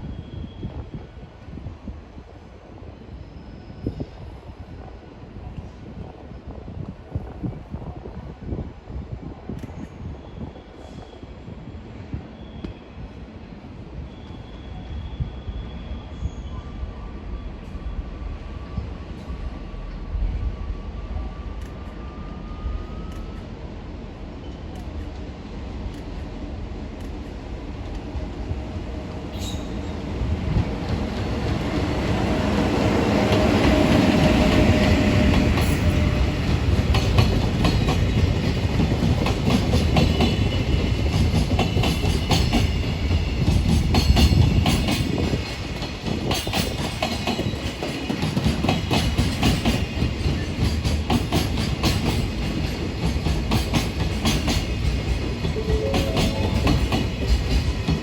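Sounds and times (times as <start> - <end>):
electric locomotive passing: 13.0 - 58.0.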